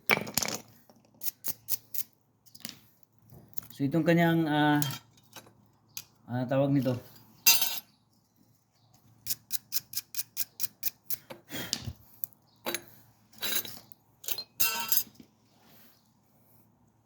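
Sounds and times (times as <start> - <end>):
metal parts scraping and clinking: 6.8 - 7.9, 12.2 - 15.3.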